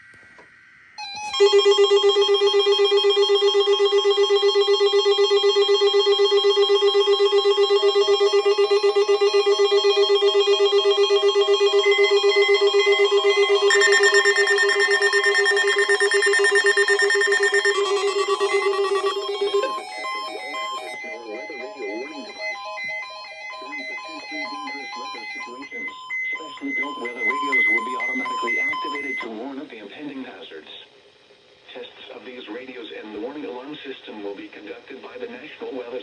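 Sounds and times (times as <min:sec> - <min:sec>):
electronic trilling alarm tone: 0:01.0 - 0:29.2.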